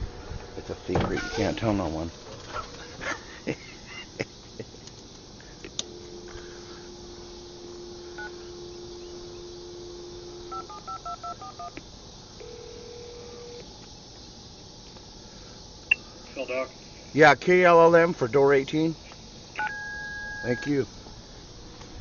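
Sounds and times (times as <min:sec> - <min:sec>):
dial tone: 0:05.9 - 0:11.7, 0:12.4 - 0:13.6, 0:19.6 - 0:20.6
telephone line clicks: 0:08.0 - 0:11.8.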